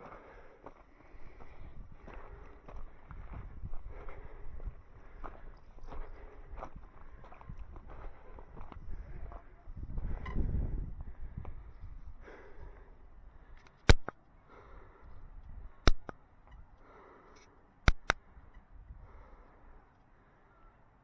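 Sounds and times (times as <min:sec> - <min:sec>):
sharp clicks: 0:13.6 - 0:14.2, 0:15.8 - 0:16.2, 0:17.4 - 0:18.2.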